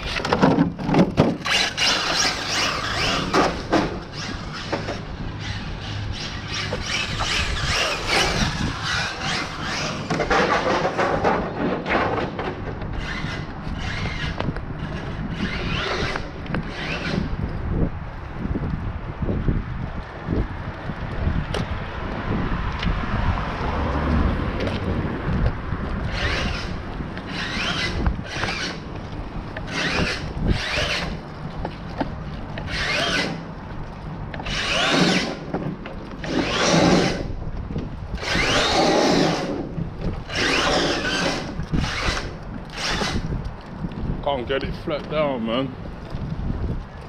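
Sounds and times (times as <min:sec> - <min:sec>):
tyre and road rumble: 0:00.0 - 0:47.0
electric motor whining: 0:01.4 - 0:10.7, 0:12.9 - 0:17.4, 0:26.1 - 0:28.8, 0:29.6 - 0:31.2, 0:32.6 - 0:33.4, 0:34.4 - 0:35.5, 0:36.2 - 0:37.3, 0:38.2 - 0:43.3.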